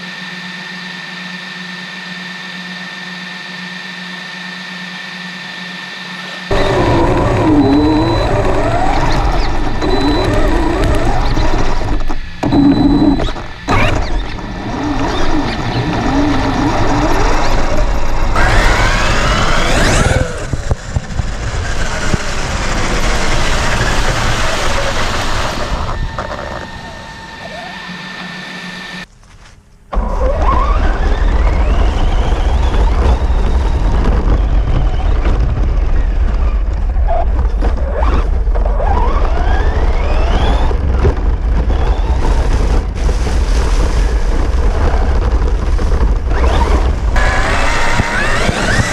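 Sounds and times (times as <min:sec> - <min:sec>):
electric motor whining: 0:00.0 - 0:29.1, 0:29.9 - 0:48.9
rough rumble: 0:06.5 - 0:28.0, 0:29.9 - 0:48.9
wind on microphone: 0:30.6 - 0:48.9.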